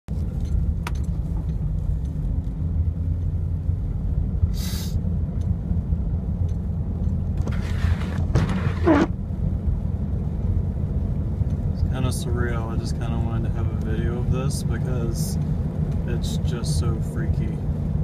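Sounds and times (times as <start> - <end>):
car engine and tyres rumbling: 0.1 - 18.0
brief hiss: 4.5 - 5.0
soft rustle: 7.4 - 9.1.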